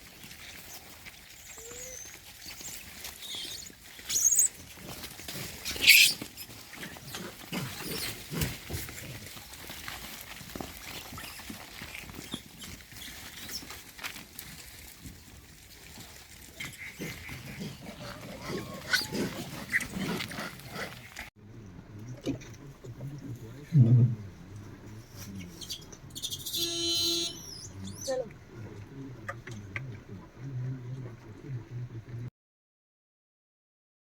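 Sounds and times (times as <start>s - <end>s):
monkeys shrieking: 0.5s - 8.9s, 16.0s - 21.2s, 25.4s - 28.3s.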